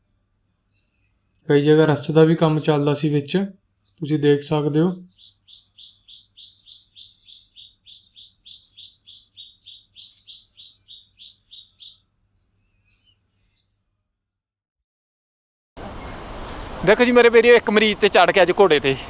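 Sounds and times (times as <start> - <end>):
bird chirping: 0.6 - 1.5, 3.8 - 4.1, 4.9 - 14.4.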